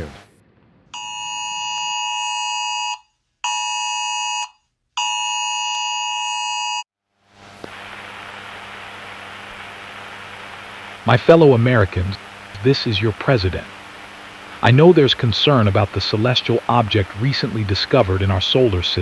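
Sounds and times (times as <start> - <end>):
steady hiss: 7.3 - 19.0
low hum: 7.4 - 19.0.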